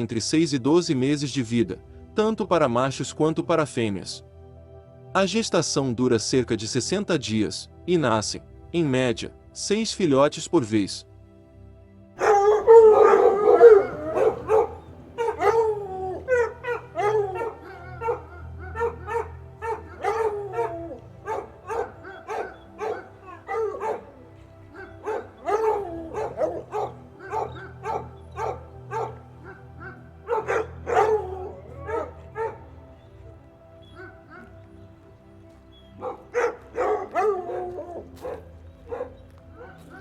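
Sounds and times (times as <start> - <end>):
background music: 0.0 - 40.0
dog barking and howling: 12.2 - 34.8, 35.7 - 40.0.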